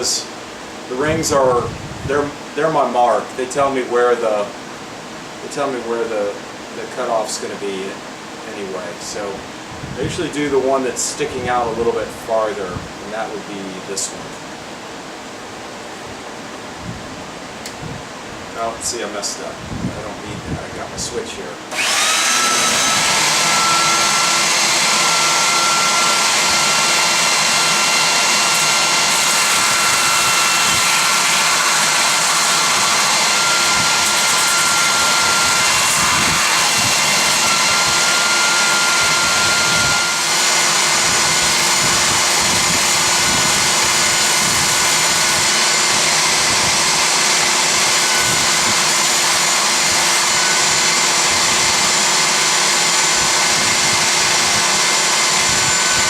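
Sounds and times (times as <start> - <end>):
belt sander grinding wood: 21.7 - 56.0
dust extractor running: 21.7 - 56.0.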